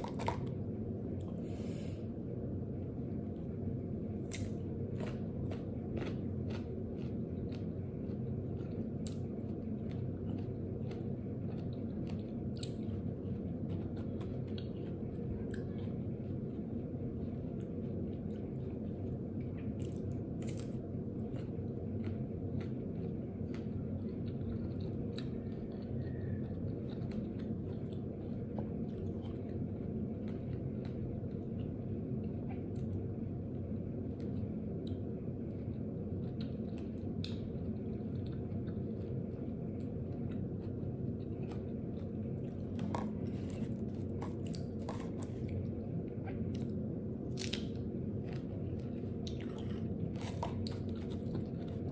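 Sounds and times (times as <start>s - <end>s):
person chewing: 0.0s - 0.5s, 4.2s - 16.6s, 19.8s - 32.9s, 35.6s - 51.9s
steady low hum: 0.0s - 51.9s
crisp crunches: 47.3s - 51.9s.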